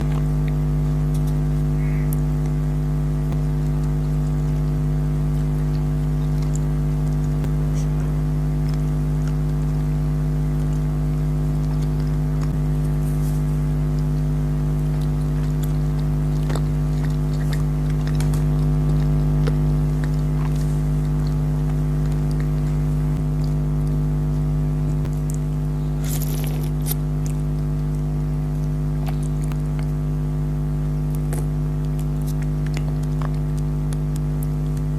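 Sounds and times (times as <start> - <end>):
steady mechanical hum: 0.0 - 34.9.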